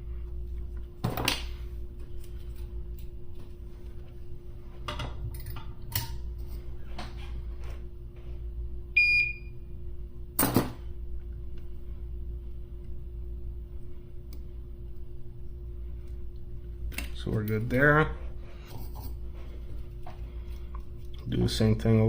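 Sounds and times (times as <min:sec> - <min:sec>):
steady low hum: 0:00.0 - 0:22.0
short electronic beep: 0:09.0 - 0:09.5.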